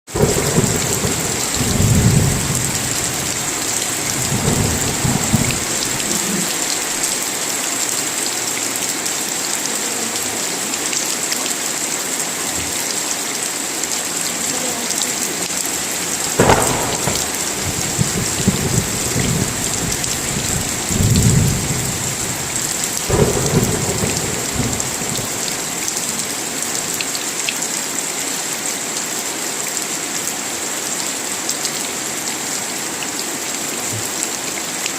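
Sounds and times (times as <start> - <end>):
thunder rumbling: 0.1 - 7.1, 15.7 - 26.3
heavy rainfall: 0.1 - 34.9
sharp thunderclap: 0.2 - 6.5, 16.3 - 26.1.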